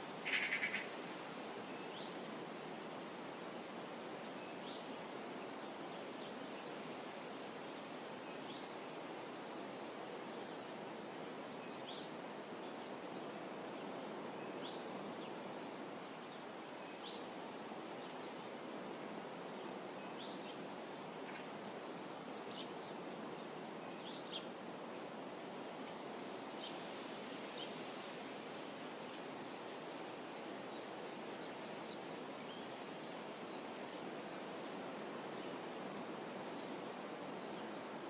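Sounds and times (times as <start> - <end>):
outdoor ambient hiss: 0.0 - 38.0
small birds chirping: 0.2 - 0.9.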